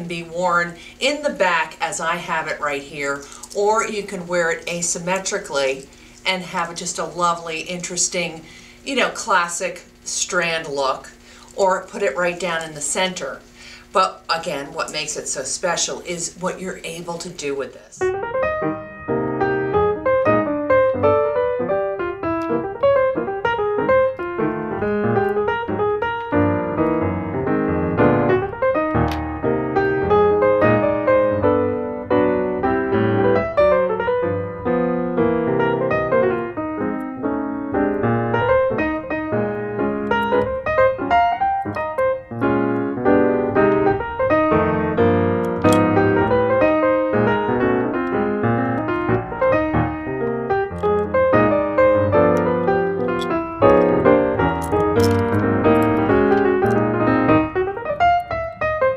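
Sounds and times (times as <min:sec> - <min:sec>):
piano music: 0:18.0 - 0:58.9.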